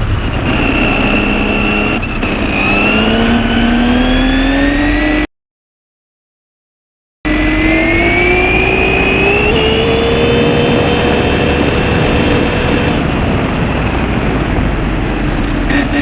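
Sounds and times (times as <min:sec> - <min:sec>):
tyre and road noise: 0:00.0 - 0:05.3, 0:07.3 - 0:16.0
electric rc car motor whining: 0:00.5 - 0:05.2, 0:07.3 - 0:13.0.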